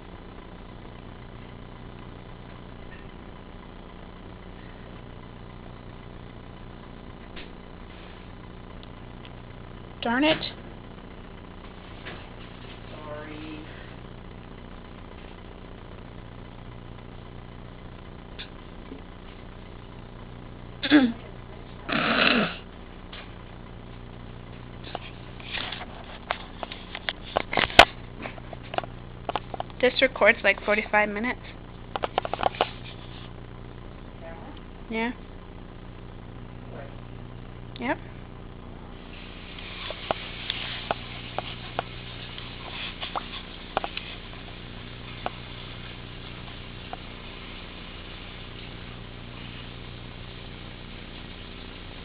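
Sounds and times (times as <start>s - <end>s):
low electrical hum: 0.0s - 52.0s
faint clicks and rustles: 23.0s - 33.9s, 37.6s - 52.0s.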